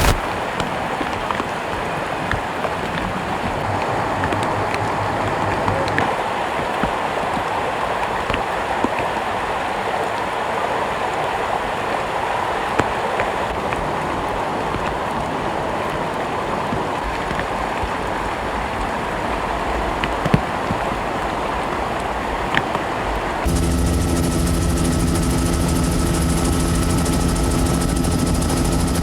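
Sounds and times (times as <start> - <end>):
floodwater rushing: 0.0 - 0.7.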